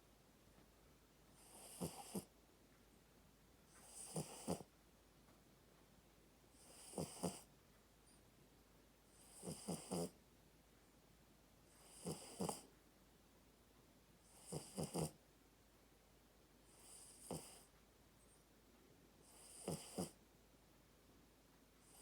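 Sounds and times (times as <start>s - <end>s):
puppy snoring softly: 1.3s - 2.4s, 3.7s - 4.8s, 6.5s - 8.2s, 9.1s - 10.2s, 11.7s - 12.8s, 14.2s - 15.2s, 16.6s - 18.5s, 19.2s - 20.2s, 21.8s - 22.0s.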